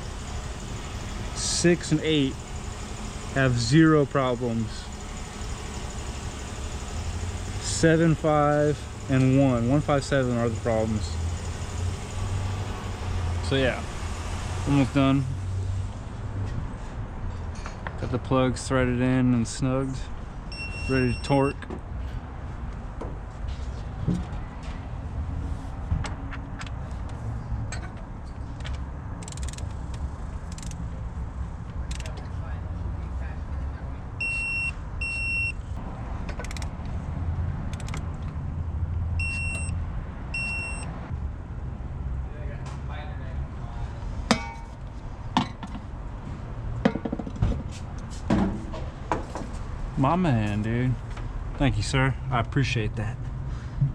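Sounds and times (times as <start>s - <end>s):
sharp metal clicks: 28.6s - 30.8s, 36.3s - 36.8s, 37.7s - 38.4s
ratchet clicking: 29.2s - 30.8s.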